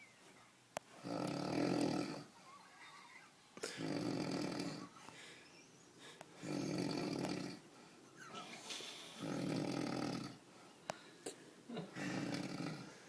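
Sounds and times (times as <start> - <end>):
quiet breathing: 0.0 - 13.0
person snoring: 1.0 - 2.4, 3.6 - 5.0, 6.4 - 7.6, 8.7 - 10.4, 11.9 - 13.0.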